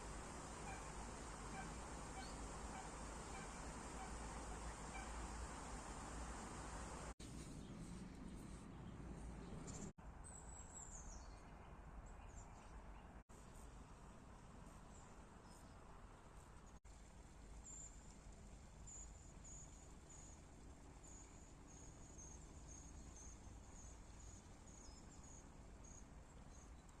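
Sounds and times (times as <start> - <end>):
faint steady hiss: 0.0 - 8.5.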